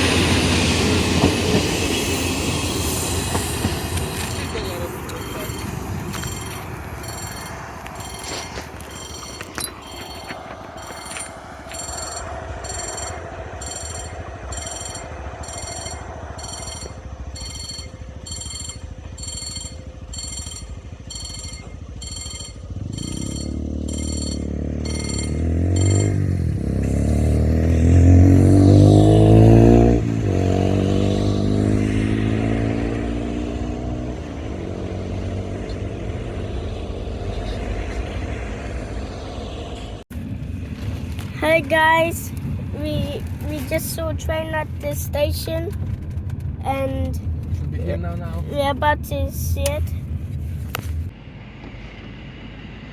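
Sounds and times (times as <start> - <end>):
level crossing warning bell: 0.0 - 27.3
diesel train passing: 0.0 - 52.9.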